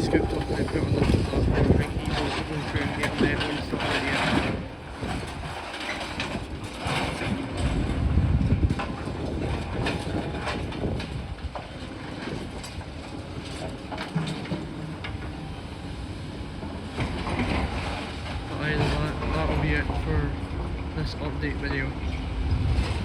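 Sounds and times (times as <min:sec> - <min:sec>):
excavator diesel rumble: 0:00.0 - 0:23.0
concrete rubble clattering: 0:01.0 - 0:08.0.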